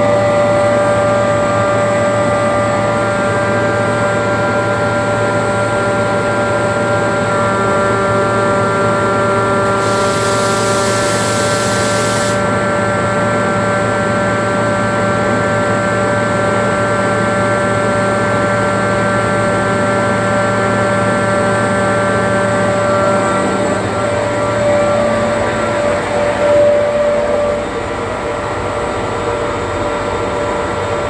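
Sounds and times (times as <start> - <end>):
air compressor whining: 9.4 - 13.0
high air hiss: 9.6 - 12.5.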